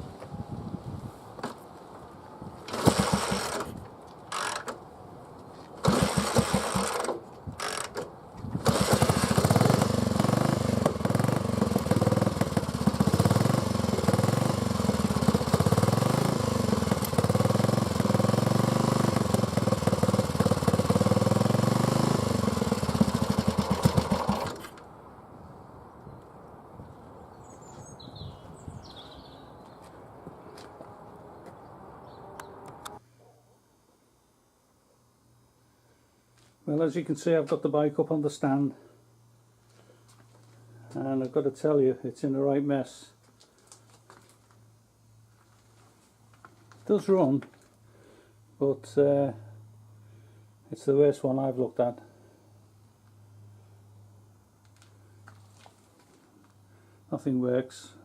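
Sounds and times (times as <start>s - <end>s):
motorcycle engine starting and running: 2.6s - 4.8s, 5.8s - 24.9s.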